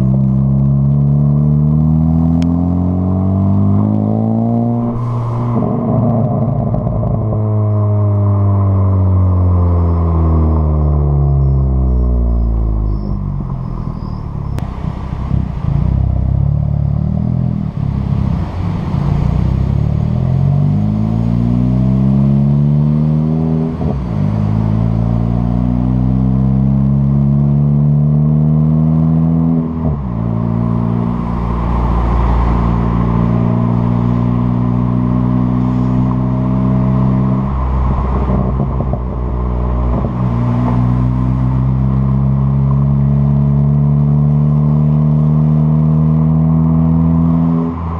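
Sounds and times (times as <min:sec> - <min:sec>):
car engine revving through gears: 0:00.0 - 0:47.9
exhaust pops and crackles: 0:37.4 - 0:40.5.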